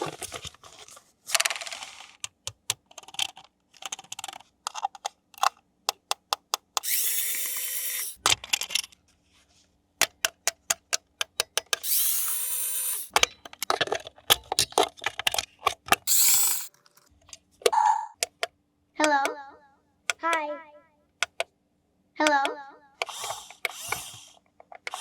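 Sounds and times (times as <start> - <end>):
plastic toy clicking: 2.2 - 7.0, 21.2 - 21.5, 22.2 - 25.0
small electric motor whirring: 6.8 - 8.2, 11.8 - 13.1, 16.1 - 16.7, 23.0 - 25.0.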